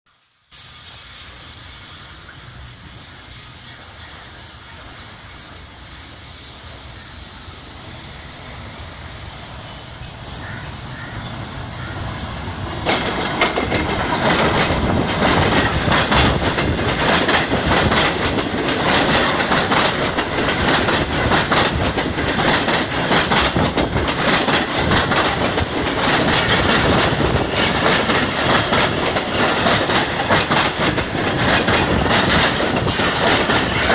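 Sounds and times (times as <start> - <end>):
train passing: 0.3 - 33.9
wheels clacking on track: 9.7 - 33.9.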